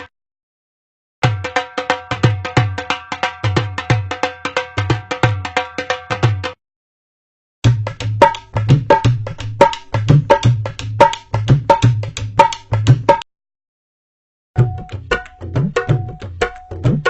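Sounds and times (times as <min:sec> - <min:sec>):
hand drum rhythm: 0:01.2 - 0:06.6, 0:07.7 - 0:13.2, 0:14.6 - 0:17.0.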